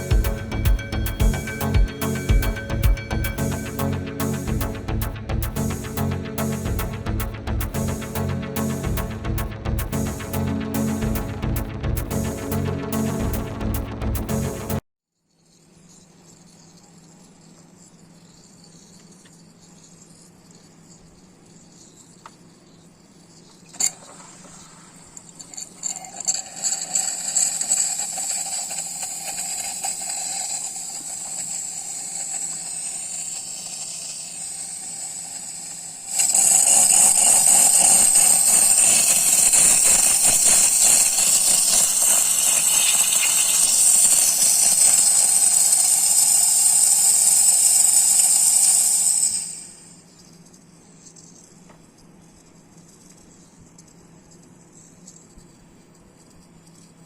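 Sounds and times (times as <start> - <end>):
steam wand hissing and spitting: 23.8 - 49.8.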